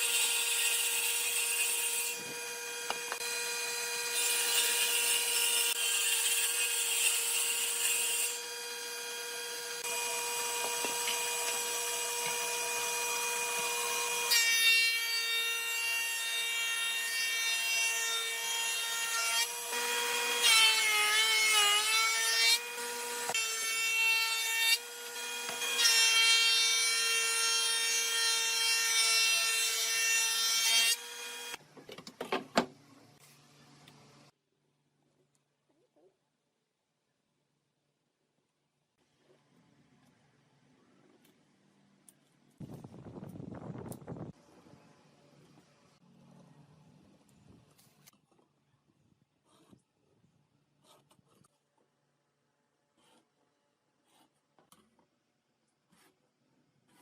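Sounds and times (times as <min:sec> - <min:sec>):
power tool cutting wood: 0:00.0 - 0:31.6.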